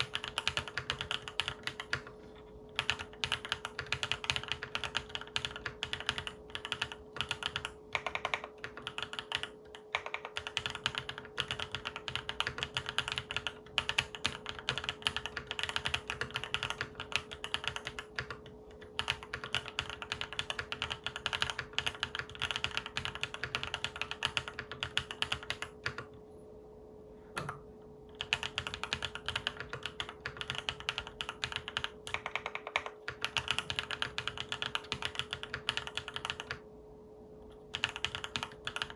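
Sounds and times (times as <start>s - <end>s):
mechanical keyboard typing: 0.0s - 2.1s, 2.8s - 26.2s, 28.2s - 36.6s, 37.7s - 38.9s.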